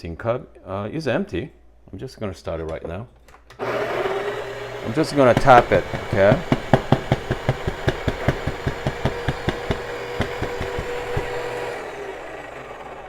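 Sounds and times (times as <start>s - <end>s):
grinder motor humming and knocking: 3.6s - 13.0s.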